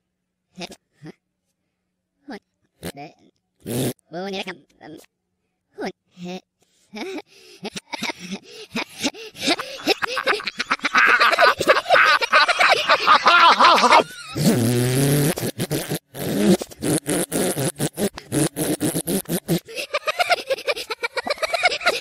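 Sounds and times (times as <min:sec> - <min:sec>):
reversed cartoon fart effects: 0:02.8 - 0:04.0, 0:13.6 - 0:19.7.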